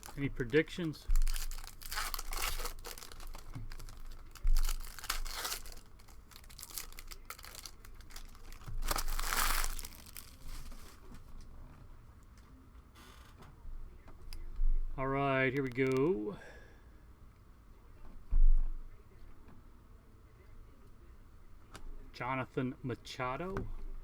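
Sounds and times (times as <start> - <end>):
foil wrappers crinkling and tearing: 0.0 - 11.2.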